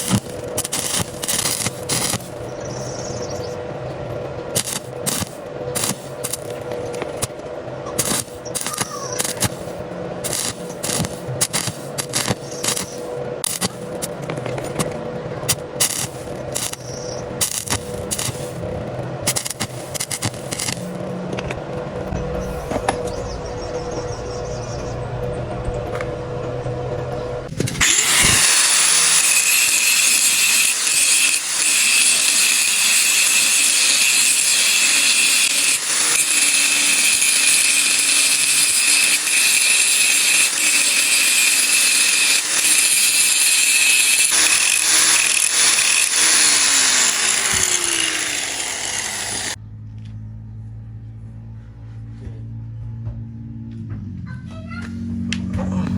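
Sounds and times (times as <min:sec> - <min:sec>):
angle grinder grinding steel: 0:00.0 - 0:03.7, 0:04.5 - 0:49.6
background music: 0:00.2 - 0:29.4.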